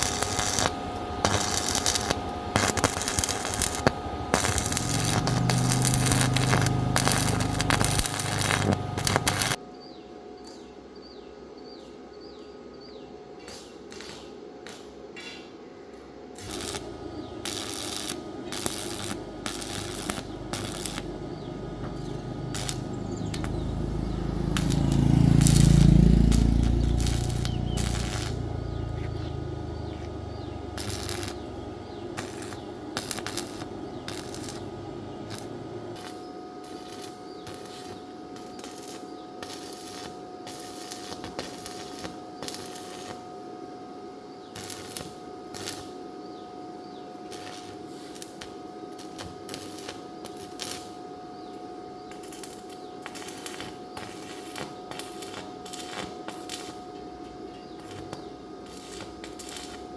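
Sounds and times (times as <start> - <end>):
vehicle engine passing by: 4.0 - 9.6, 16.7 - 36.0.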